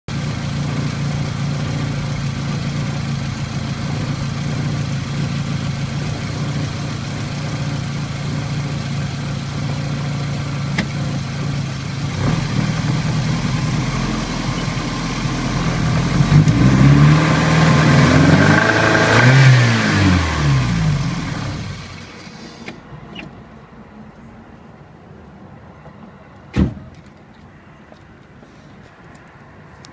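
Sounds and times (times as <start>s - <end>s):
misfiring car engine revving: 0.2s - 22.3s.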